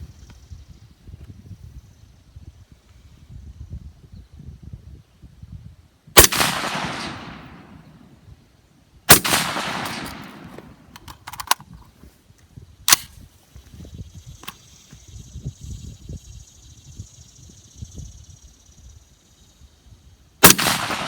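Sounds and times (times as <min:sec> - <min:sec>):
rifle shots echoing: 0:06.2 - 0:08.1, 0:09.1 - 0:11.1, 0:20.4 - 0:21.0.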